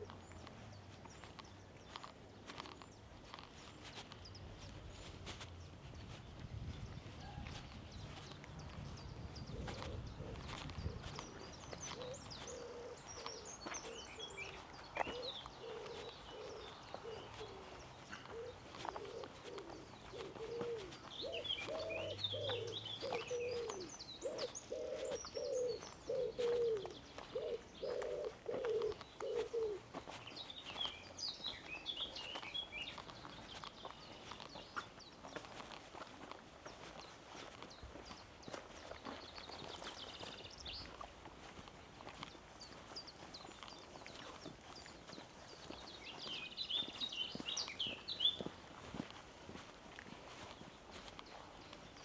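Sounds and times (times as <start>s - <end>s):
small songbirds chirping: 0.0s - 52.0s
pigeon cooing: 9.5s - 14.2s, 15.0s - 29.9s.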